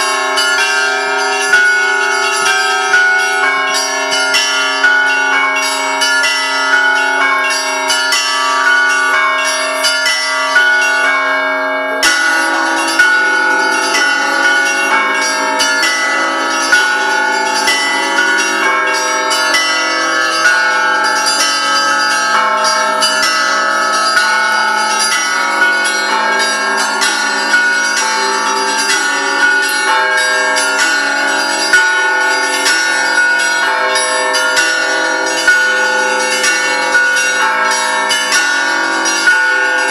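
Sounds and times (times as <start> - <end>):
deep bell: 0.0 - 39.9
large bells ringing: 0.0 - 39.9
small church bells struck rapidly: 0.0 - 39.9.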